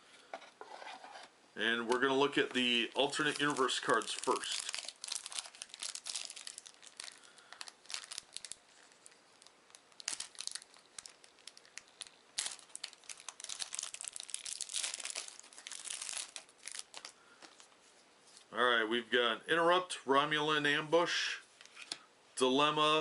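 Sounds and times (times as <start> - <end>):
wrapper tearing and crinkling: 2.5 - 17.7.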